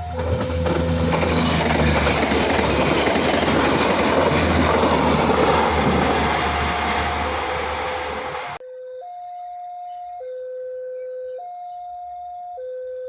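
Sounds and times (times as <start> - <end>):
train passing at speed: 0.0 - 8.6.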